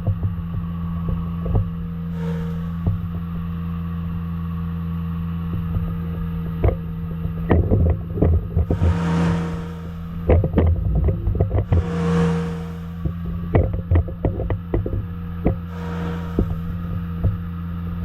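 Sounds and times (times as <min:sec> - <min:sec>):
diesel engine running: 0:00.0 - 0:18.0
hydraulic hiss: 0:02.1 - 0:03.9, 0:08.7 - 0:10.3, 0:11.6 - 0:13.2, 0:15.7 - 0:17.2.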